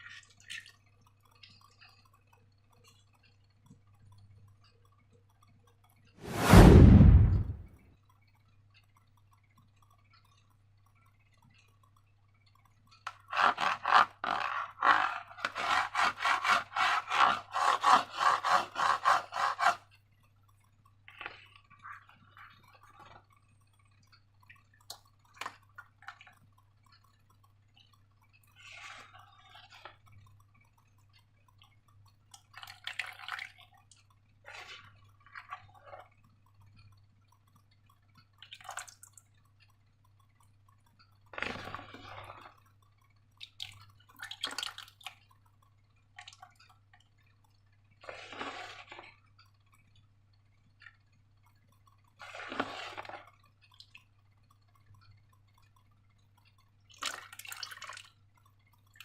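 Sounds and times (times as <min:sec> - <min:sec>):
low hum: 0:06.2 - 0:07.7
slime squelching: 0:27.7 - 0:49.9, 0:51.8 - 0:59.0.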